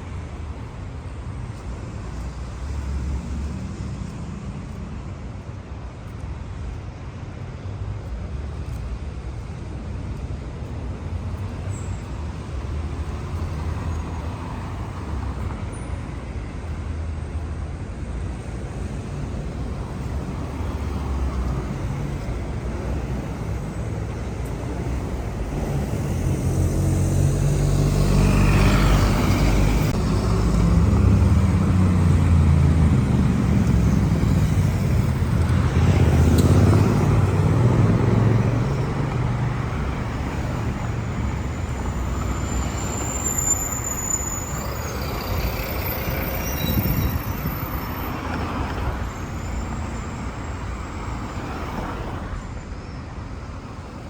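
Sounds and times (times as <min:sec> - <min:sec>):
city traffic rumble: 0:00.0 - 0:54.0
vehicle passing close by: 0:24.8 - 0:42.3.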